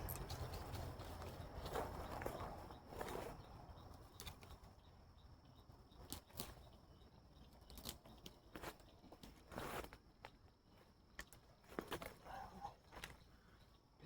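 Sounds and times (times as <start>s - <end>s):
soft rustle: 0.0s - 4.7s, 7.7s - 13.6s.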